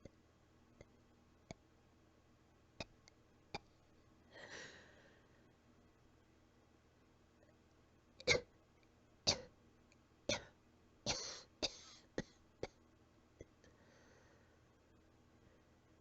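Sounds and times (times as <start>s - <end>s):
faint breath: 4.3s - 5.6s, 13.6s - 14.7s
person coughing softly: 10.3s - 12.4s.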